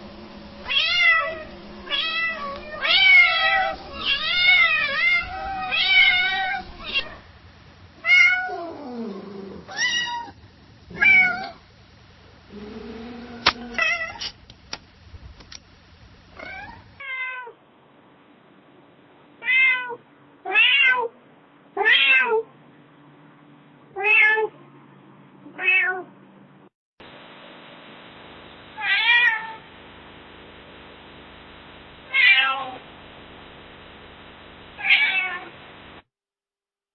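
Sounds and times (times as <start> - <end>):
steady background hiss: 0.0 - 20.5, 27.0 - 36.1
cat meowing: 0.6 - 7.2, 9.7 - 10.4, 11.0 - 11.6, 19.4 - 21.1, 28.8 - 29.6, 32.1 - 32.8, 34.8 - 35.5.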